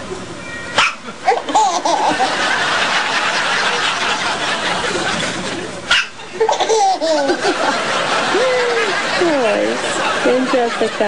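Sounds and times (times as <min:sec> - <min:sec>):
breathy laughing: 0:06.4 - 0:10.0.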